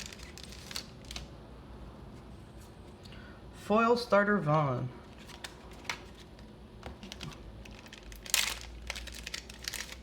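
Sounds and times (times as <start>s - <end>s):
wrapper crinkling: 0.0s - 1.3s, 7.0s - 10.0s.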